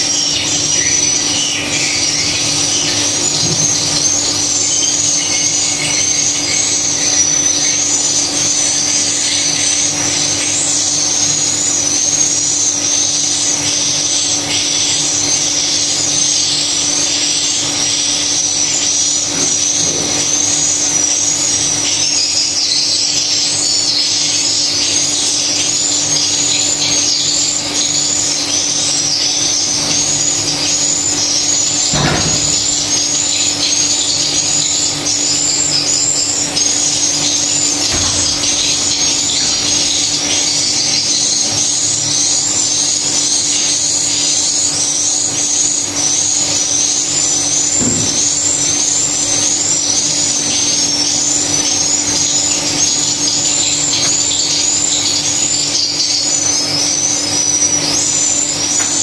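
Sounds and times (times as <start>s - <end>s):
knock: 31.9s - 33.1s, 37.9s - 38.8s, 47.7s - 48.4s.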